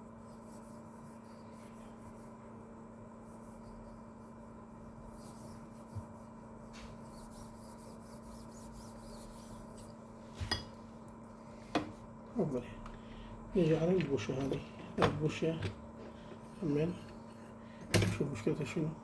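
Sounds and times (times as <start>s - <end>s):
low electrical hum: 0.0s - 19.0s
faint rubbing of parts: 11.6s - 17.6s.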